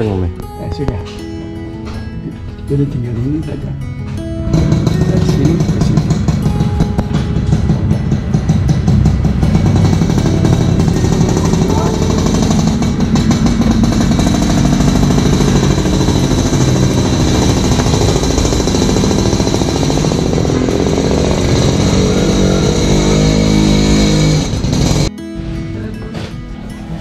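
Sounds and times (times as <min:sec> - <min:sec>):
engine running loudly: 0:04.5 - 0:25.1.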